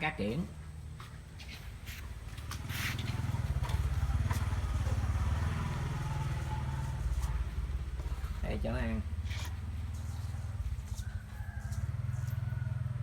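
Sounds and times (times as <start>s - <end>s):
small engine running: 2.2s - 11.0s.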